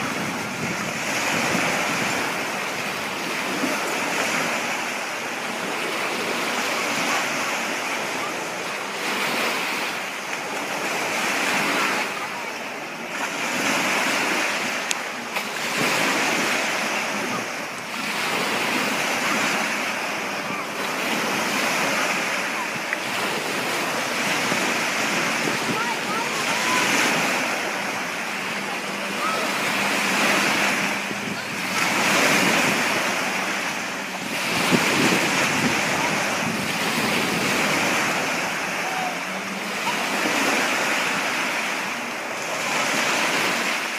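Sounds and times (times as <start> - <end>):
wind on microphone: 0.0 - 7.8, 15.7 - 41.4
water splashing past boat: 0.0 - 43.9.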